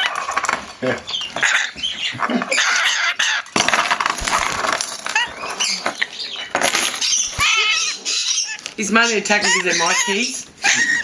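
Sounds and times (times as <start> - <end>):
lorikeet screeching: 1.1 - 3.4, 5.1 - 11.0.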